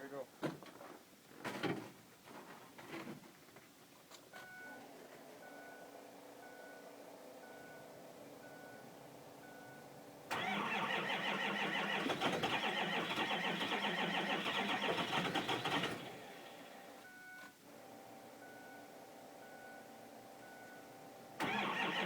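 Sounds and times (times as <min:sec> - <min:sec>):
diesel engine cranking: 0:10.3 - 0:16.7, 0:21.4 - 0:22.0.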